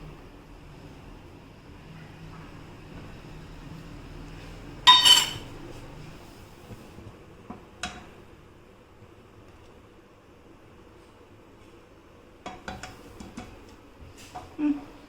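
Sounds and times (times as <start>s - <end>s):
metal utensil clattering on cookware: 4.9s - 5.5s.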